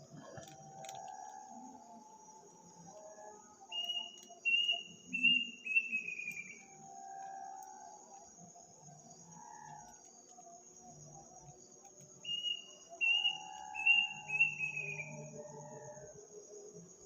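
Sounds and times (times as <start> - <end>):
crickets chirring: 0.0 - 17.0
night bird calling: 2.9 - 7.6, 12.2 - 16.2.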